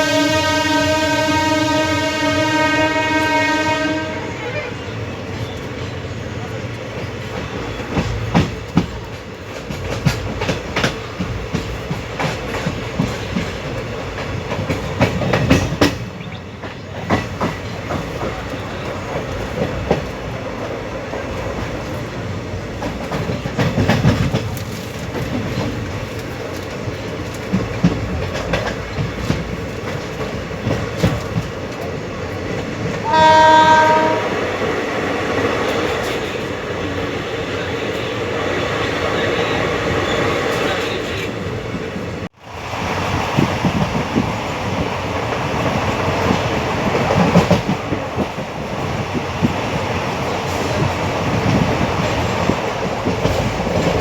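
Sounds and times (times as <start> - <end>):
locomotive horn blast: 0.0 - 4.9, 33.0 - 34.5
train coach rumble: 0.0 - 54.0
wheels clacking over rail joints: 4.8 - 42.0, 42.8 - 54.0.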